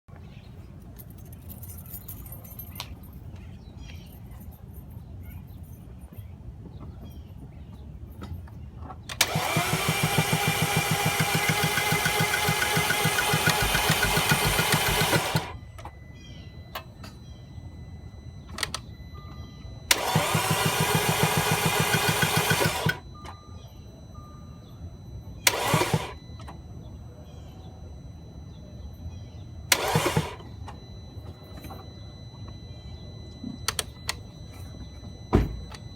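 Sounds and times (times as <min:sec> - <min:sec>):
car starter cranking engine: 0:09.0 - 0:16.4, 0:19.9 - 0:23.5, 0:25.0 - 0:26.8, 0:29.4 - 0:35.9.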